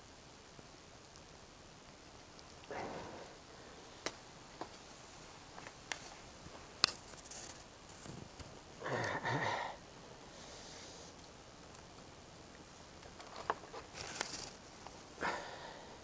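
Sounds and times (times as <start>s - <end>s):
person grunting: 2.7s - 3.3s, 8.8s - 9.8s.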